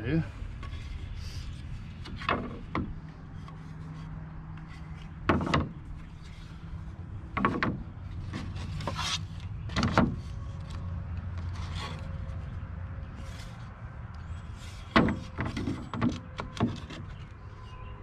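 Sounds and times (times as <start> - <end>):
wood knocking and scraping on wood: 0.5 - 17.4.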